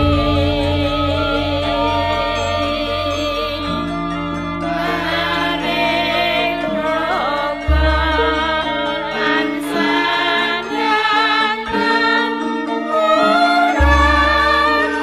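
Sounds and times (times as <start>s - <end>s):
deep bass note: 0.0s - 4.9s, 7.6s - 8.8s
person singing: 0.0s - 15.0s
sustained instrumental tones: 0.0s - 15.0s.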